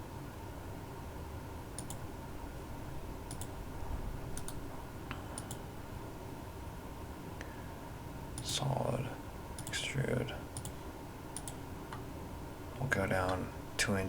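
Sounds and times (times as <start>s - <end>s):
steady low hum: 0.0s - 14.0s
computer mouse clicking: 1.8s - 2.0s, 3.3s - 3.6s, 4.3s - 4.6s, 5.4s - 5.6s, 9.6s - 9.8s, 10.5s - 10.8s, 11.4s - 12.0s.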